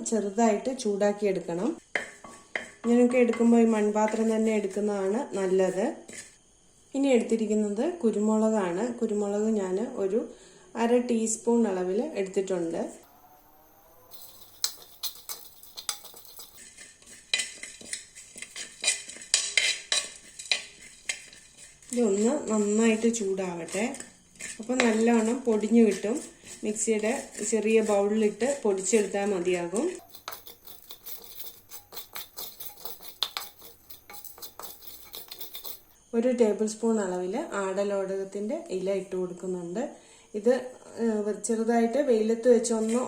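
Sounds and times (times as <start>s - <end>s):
spoon knocking clay pot: 14.1s - 36.0s.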